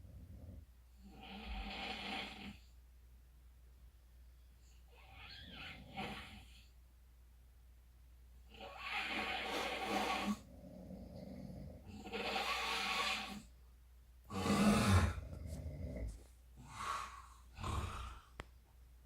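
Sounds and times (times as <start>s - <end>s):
person snoring: 14.3s - 18.4s.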